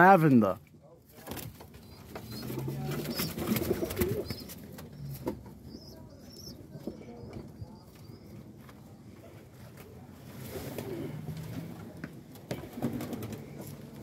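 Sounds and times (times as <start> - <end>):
pigeons cooing: 1.8 - 8.4.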